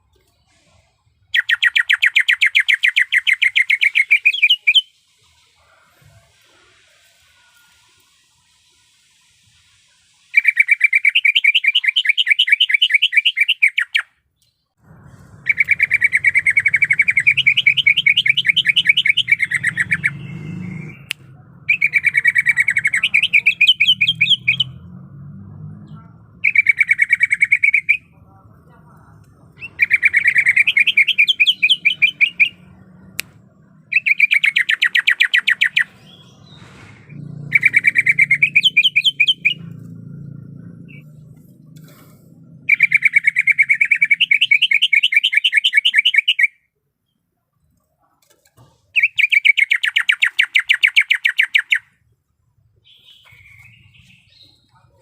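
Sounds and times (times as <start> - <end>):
bird singing fast trills: 1.3 - 5.5, 10.2 - 14.6, 15.3 - 25.0, 25.6 - 28.2, 29.4 - 41.4, 42.4 - 46.6, 49.0 - 52.0, 52.8 - 55.0
low hum: 35.6 - 43.4.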